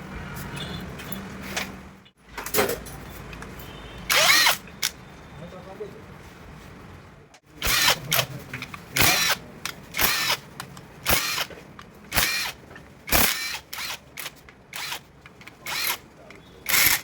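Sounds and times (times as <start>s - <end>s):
drill-driver motor whine: 4.1s - 5.0s, 11.1s - 11.5s, 12.1s - 15.0s, 15.7s - 16.0s, 16.7s - 17.0s.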